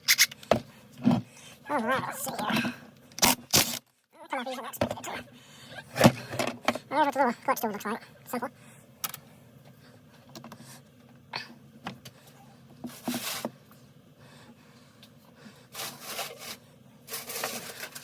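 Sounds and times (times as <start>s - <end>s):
scraping and rustling: 12.9s - 13.6s, 15.7s - 18.0s.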